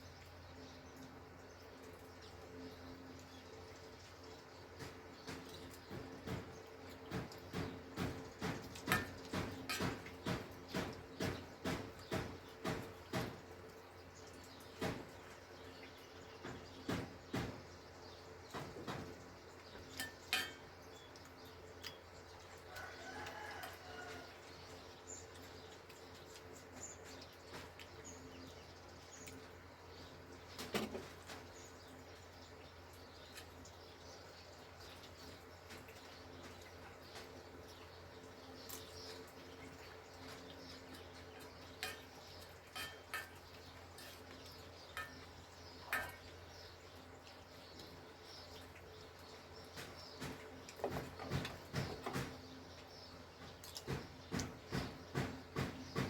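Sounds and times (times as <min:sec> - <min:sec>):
spoons clinking on bowls: 0:19.9 - 0:20.7, 0:41.6 - 0:44.3, 0:45.9 - 0:46.3.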